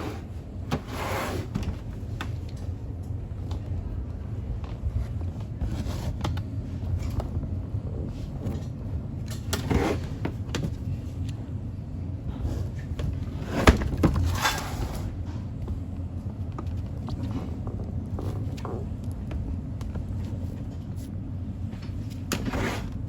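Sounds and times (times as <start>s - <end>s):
steady low rumble: 0.0s - 0.9s, 1.5s - 23.0s.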